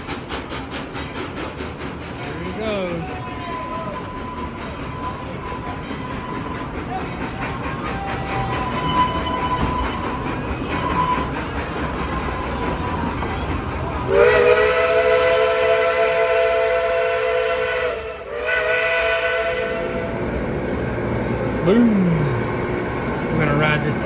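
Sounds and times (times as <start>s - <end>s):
train running: 0.0s - 24.0s
steam locomotive chime whistle: 8.2s - 10.2s, 14.1s - 20.2s.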